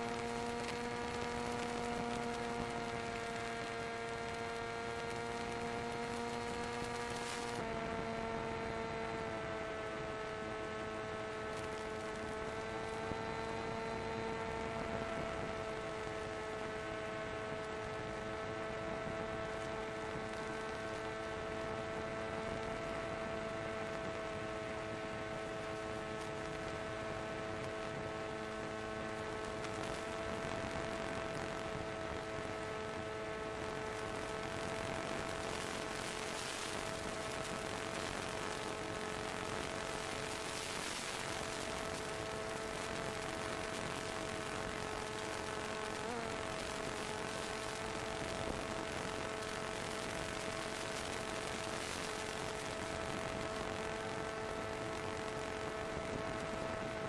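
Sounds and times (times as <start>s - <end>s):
model plane motor whine: 0.0s - 57.0s.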